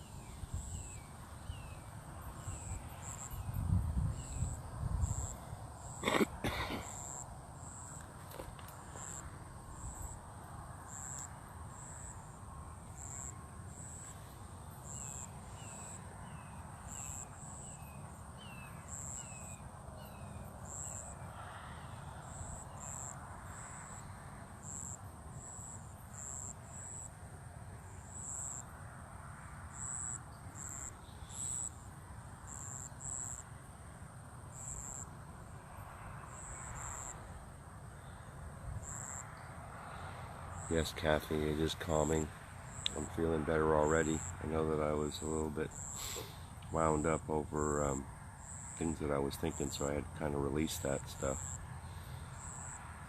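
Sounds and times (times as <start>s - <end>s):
cricket trill: 0.0s - 53.0s
insect chirps: 0.0s - 53.0s.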